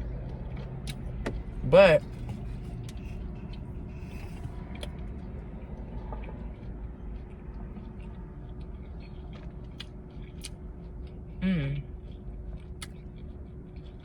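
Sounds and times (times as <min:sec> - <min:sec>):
chewing crispy food: 0:00.0 - 0:14.0
steady low hum: 0:00.0 - 0:14.0.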